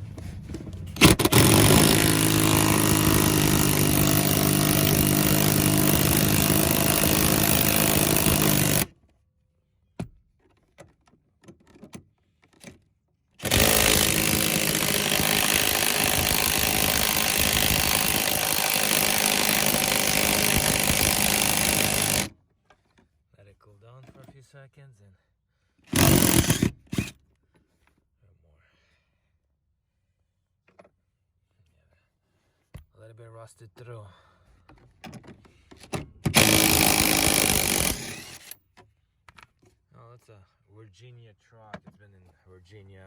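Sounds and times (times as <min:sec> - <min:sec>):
handheld power tool running: 0:01.0 - 0:08.9, 0:13.4 - 0:22.3, 0:25.9 - 0:27.1, 0:36.3 - 0:38.6.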